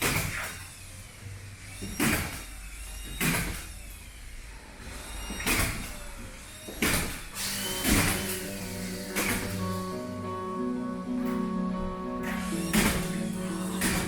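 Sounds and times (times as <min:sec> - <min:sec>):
sharp work clunks: 0:06.6 - 0:09.9, 0:12.2 - 0:14.0.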